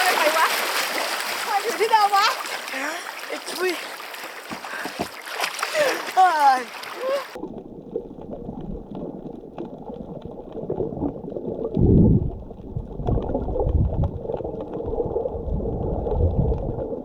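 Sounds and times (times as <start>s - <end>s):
low rush of water: 0.0s - 7.6s
underwater gurgling and bubbling: 7.4s - 17.0s.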